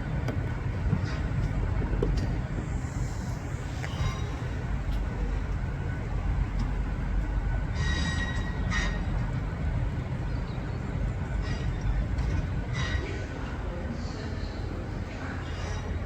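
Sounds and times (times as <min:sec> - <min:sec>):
train rumbling: 0:00.0 - 0:16.0
high-pitched train squeals: 0:03.0 - 0:04.6, 0:07.7 - 0:09.2, 0:11.4 - 0:12.0, 0:12.6 - 0:13.5, 0:15.4 - 0:16.0.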